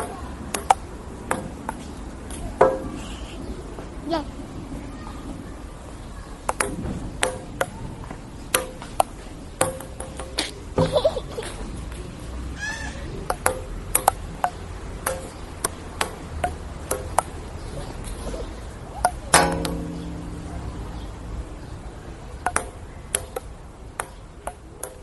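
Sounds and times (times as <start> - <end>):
table tennis ball clicking: 0.0 - 1.8, 6.5 - 7.8, 8.5 - 10.4, 13.3 - 17.4, 22.4 - 25.0.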